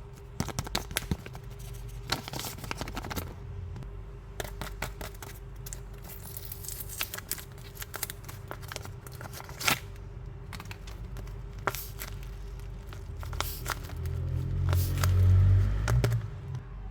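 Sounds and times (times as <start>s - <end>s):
plastic packaging crinkling: 0.2s - 3.4s, 4.5s - 16.4s
plastic tearing: 5.0s - 16.4s.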